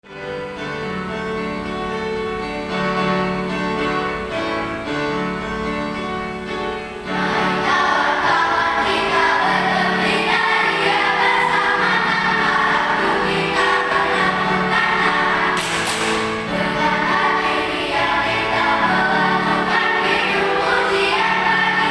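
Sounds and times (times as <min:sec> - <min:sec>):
choir singing a hymn: 0:00.4 - 0:21.9
instrumental accompaniment: 0:10.4 - 0:21.4.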